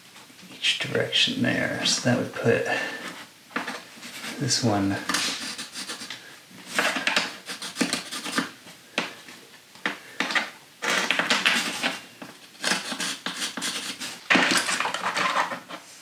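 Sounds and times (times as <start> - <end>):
hard objects clinking and scraping: 3.6 - 8.5, 10.3 - 15.8.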